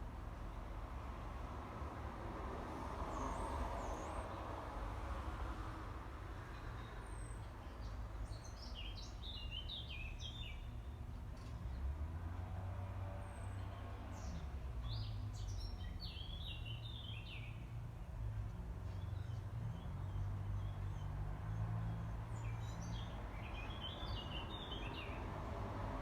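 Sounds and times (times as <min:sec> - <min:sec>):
songbird chirping: 0:19.0 - 0:25.3.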